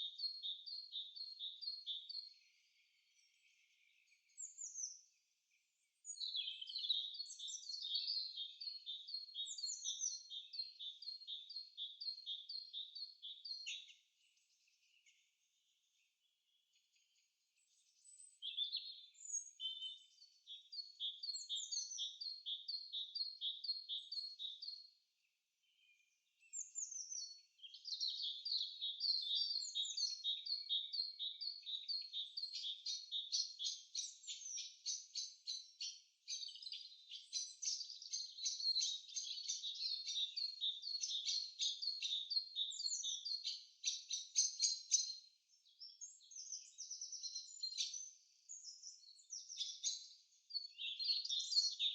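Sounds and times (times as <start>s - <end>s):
songbirds chirping and trilling: 0.0s - 51.9s.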